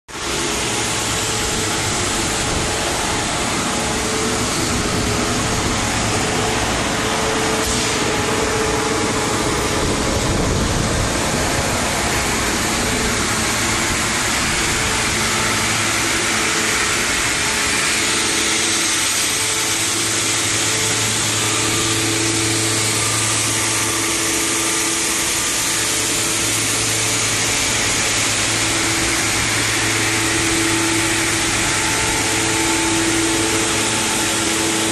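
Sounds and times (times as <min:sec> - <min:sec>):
held whining tones: 0:00.1 - 0:34.9
shot blasting machine running: 0:00.1 - 0:34.9.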